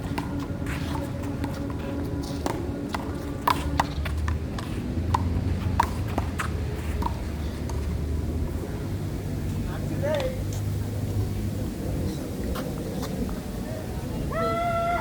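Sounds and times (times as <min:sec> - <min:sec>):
steady low rumble: 0:00.0 - 0:14.9.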